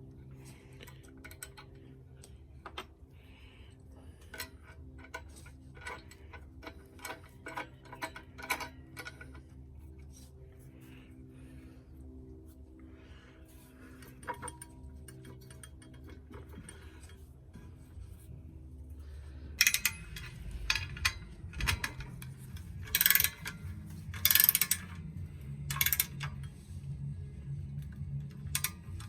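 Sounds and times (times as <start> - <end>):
metal tools clinking and rattling: 0.3 - 2.8, 4.1 - 10.2, 13.8 - 18.3, 19.6 - 26.9, 27.7 - 29.0
metallic scrapes: 13.4 - 27.2.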